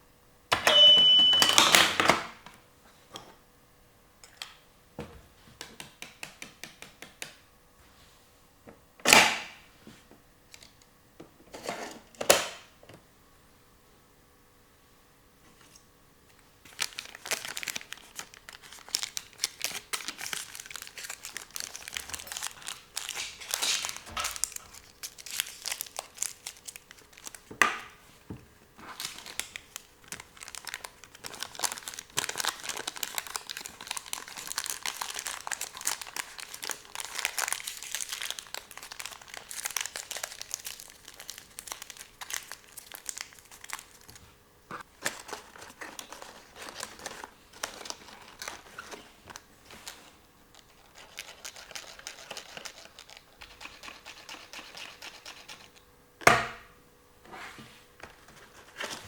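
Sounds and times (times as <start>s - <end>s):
plastic packaging crinkling: 16.6s - 27.9s, 28.8s - 54.1s.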